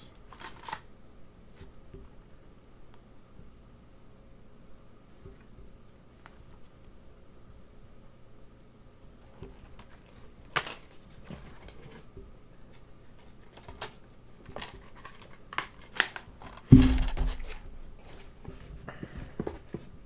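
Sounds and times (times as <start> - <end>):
plastic cases being shuffled: 13.2 - 20.0
thump: 16.7 - 17.9.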